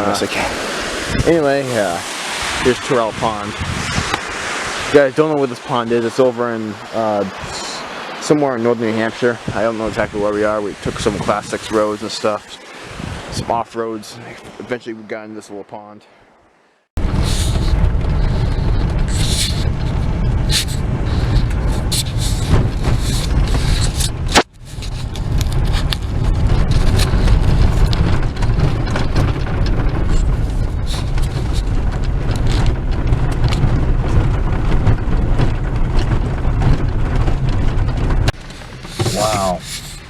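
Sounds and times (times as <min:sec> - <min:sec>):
rattles and scrapes: 0:17.0 - 0:40.0
vehicle rumbling on dirt road: 0:17.0 - 0:40.0.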